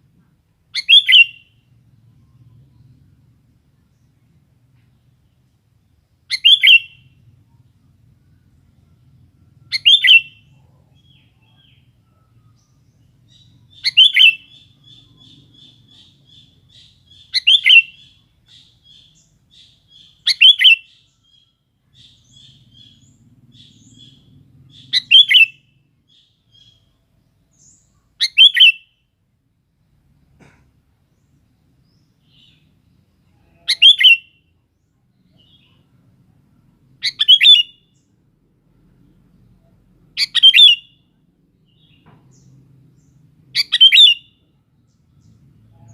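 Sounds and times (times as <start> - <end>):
faint rapid bird twittering: 6.3 - 28.8.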